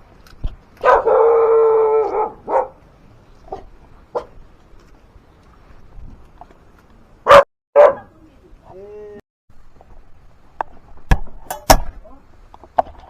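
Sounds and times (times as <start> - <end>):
dog barking: 0.8 - 2.8, 3.5 - 4.4, 7.2 - 8.1.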